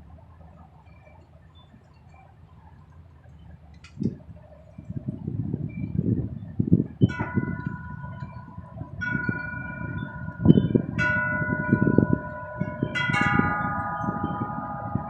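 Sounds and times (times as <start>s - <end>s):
low gusty rumbling noise: 3.6s - 15.0s
wind chimes ringing: 7.1s - 15.0s.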